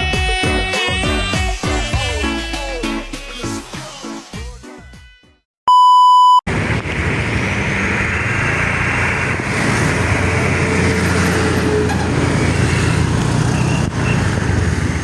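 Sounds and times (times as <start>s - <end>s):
loud electronic beep: 5.7s - 6.4s
roadside traffic noise: 6.5s - 15.0s.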